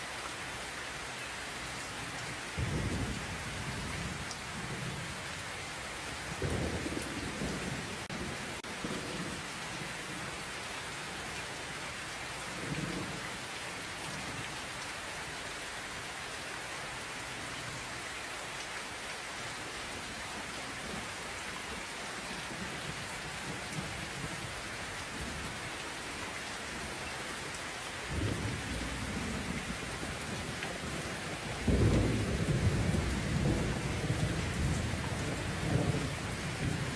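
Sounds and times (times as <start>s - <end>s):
steady rain falling: 0.0s - 36.9s
thunder rolling: 28.1s - 36.9s.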